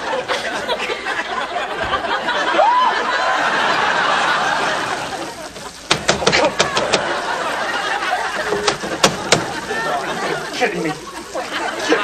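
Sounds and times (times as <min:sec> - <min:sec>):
studio audience laughing: 0:00.0 - 0:12.0
sharp clicks or knocks: 0:05.9 - 0:07.1, 0:08.5 - 0:09.6.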